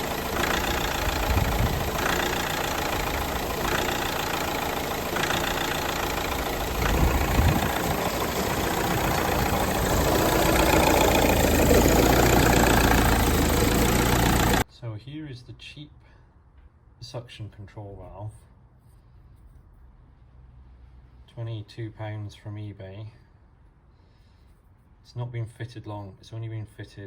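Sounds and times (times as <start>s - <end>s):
diesel engine idling roughly: 0.0s - 14.6s.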